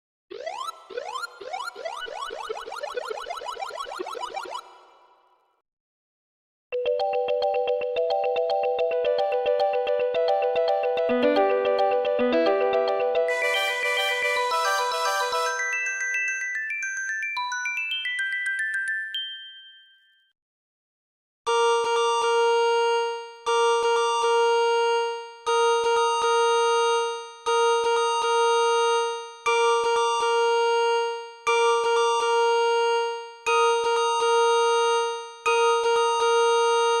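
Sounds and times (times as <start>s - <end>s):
synthesized ringtone melody: 11.6s - 20.1s.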